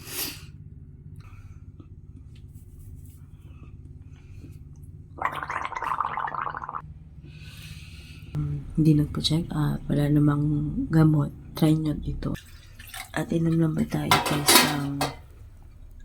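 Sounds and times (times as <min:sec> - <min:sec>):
person gargling water: 0:05.2 - 0:06.8.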